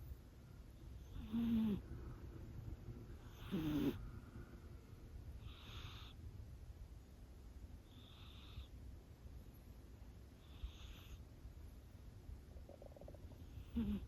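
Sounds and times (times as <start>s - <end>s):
kitten snoring: 1.0s - 1.9s, 3.2s - 4.0s, 5.4s - 6.2s, 7.8s - 8.8s, 10.4s - 11.2s, 12.7s - 14.0s.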